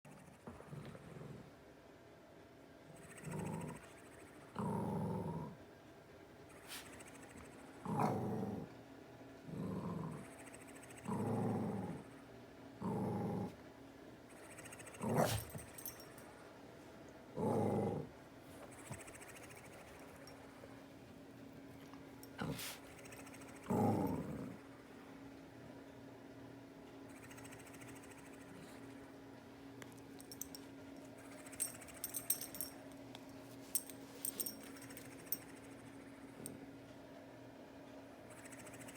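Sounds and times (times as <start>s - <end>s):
steady low hum: 0.1s - 38.9s
rattling snores: 22.3s - 24.6s.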